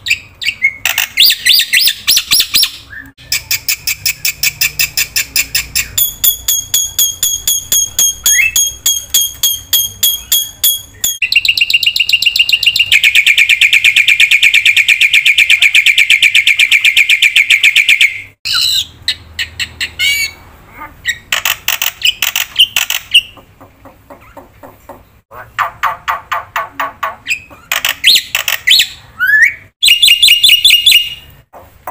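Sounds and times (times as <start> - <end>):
bird chirping rapidly: 0.0 - 31.9.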